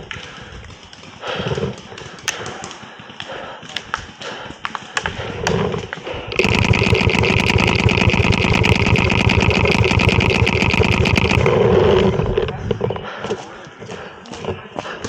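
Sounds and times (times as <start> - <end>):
fast mechanical rattle: 6.3 - 13.1
separate clicks: 6.4 - 13.1.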